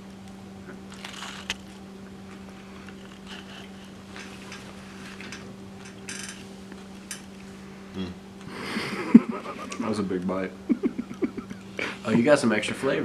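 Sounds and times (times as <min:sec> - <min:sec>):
steady low hum: 0:00.0 - 0:13.0
person chewing food: 0:00.6 - 0:04.8.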